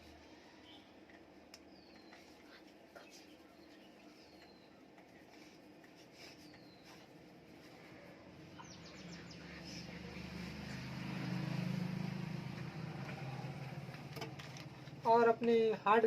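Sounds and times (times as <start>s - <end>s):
bird chirps: 8.5s - 10.9s.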